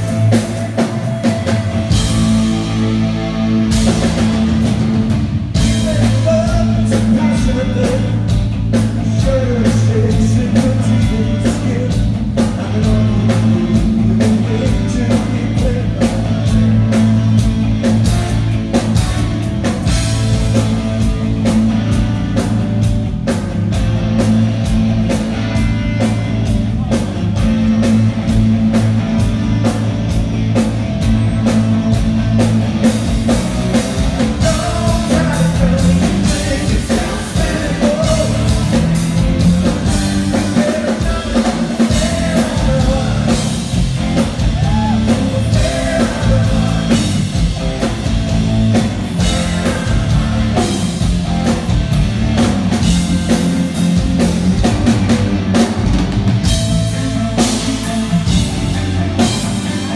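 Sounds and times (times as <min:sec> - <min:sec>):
drum kit beat: 0:00.0 - 0:59.9
electric guitars: 0:00.0 - 0:59.9
person singing: 0:34.2 - 0:39.0, 0:44.4 - 0:47.4, 0:56.7 - 0:59.9.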